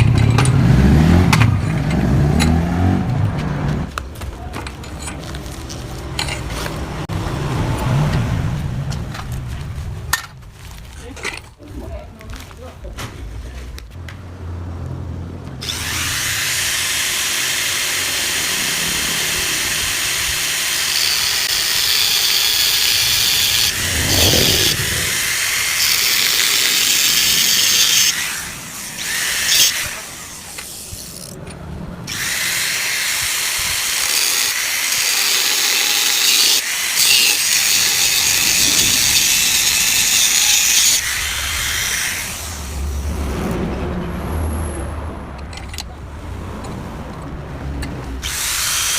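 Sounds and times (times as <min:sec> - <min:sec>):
angle grinder cutting steel: 0:15.6 - 0:31.4, 0:32.1 - 0:43.0, 0:48.2 - 0:48.9.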